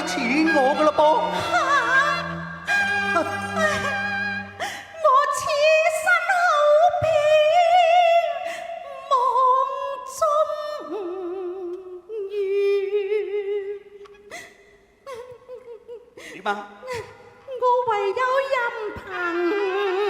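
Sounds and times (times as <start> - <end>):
opera melody with wavering held notes: 0.0 - 6.9.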